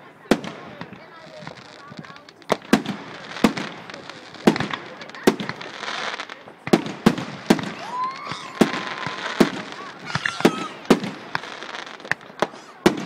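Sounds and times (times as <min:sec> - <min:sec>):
fireworks bangs: 0:00.0 - 0:13.0
fireworks crackling: 0:00.0 - 0:13.0
rising firework whistle: 0:07.6 - 0:10.9.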